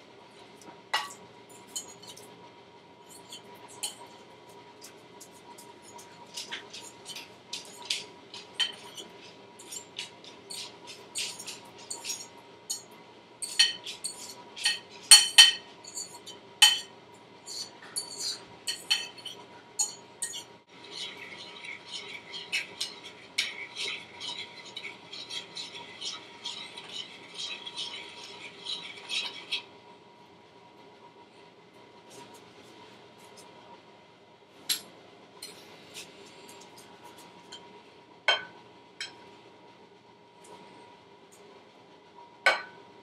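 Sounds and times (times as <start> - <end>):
spoon clinking against mixing bowl: 9.6 - 16.9, 17.5 - 29.6.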